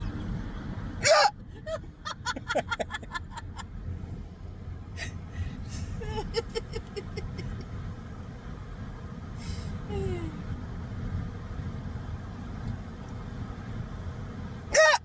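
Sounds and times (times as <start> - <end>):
person hiccuping: 1.0 - 1.3, 14.8 - 15.0
stifled giggling: 1.0 - 3.7, 5.8 - 7.6.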